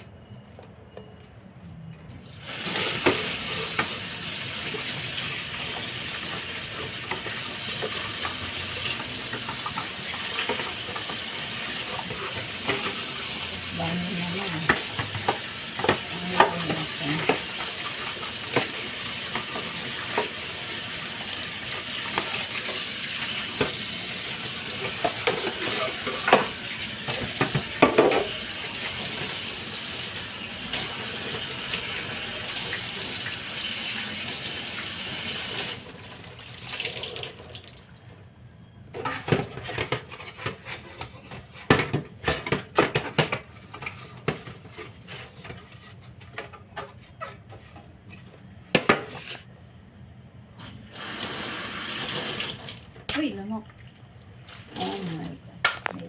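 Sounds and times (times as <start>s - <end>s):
water running from a tap: 2.4s - 38.0s, 50.9s - 55.3s
dishes clattering: 24.8s - 28.4s.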